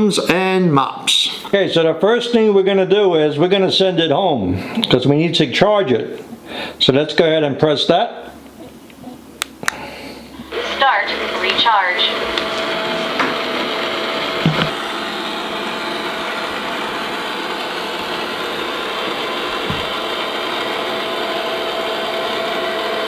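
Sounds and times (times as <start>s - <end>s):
robot vacuum whirring: 10.4s - 23.0s.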